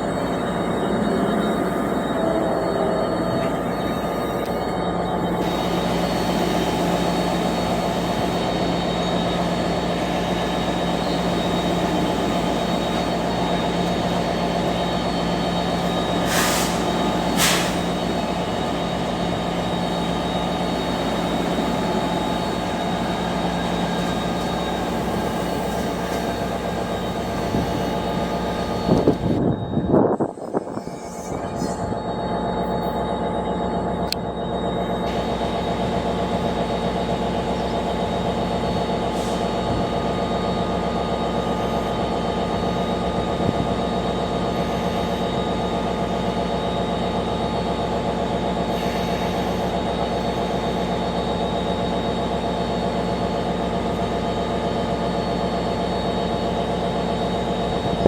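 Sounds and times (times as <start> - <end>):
train rumbling: 0.0 - 58.0
brief hisses: 16.2 - 17.9.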